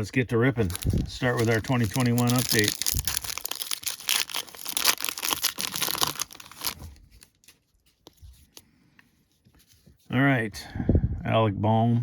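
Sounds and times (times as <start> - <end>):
wrapper being torn and crinkled: 0.6 - 7.7.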